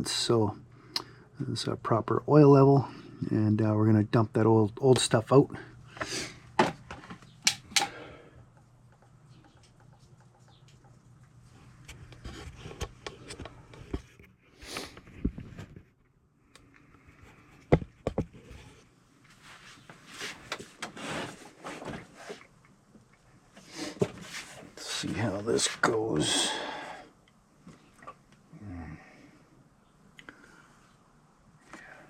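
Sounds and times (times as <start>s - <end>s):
handling knocks and clicks: 6.6s - 8.0s.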